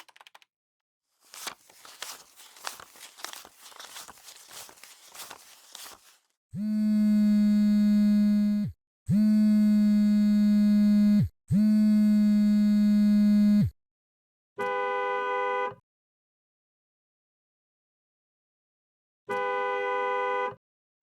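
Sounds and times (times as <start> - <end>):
crackly rustle: 1.2 - 6.3.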